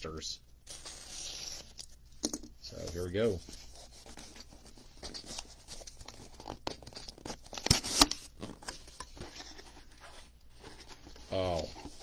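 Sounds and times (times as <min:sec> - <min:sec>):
packaging rustling and tearing: 0:03.1 - 0:08.8.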